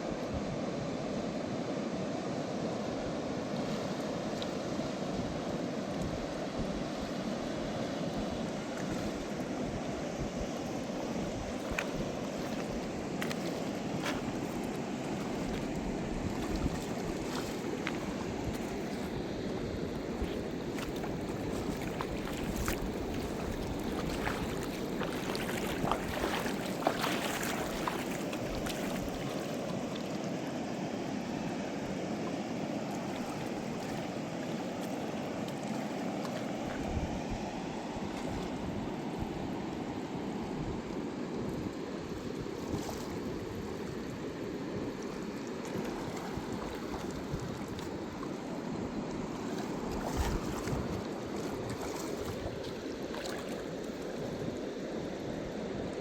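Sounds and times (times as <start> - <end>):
river rushing: 1.0 - 38.7.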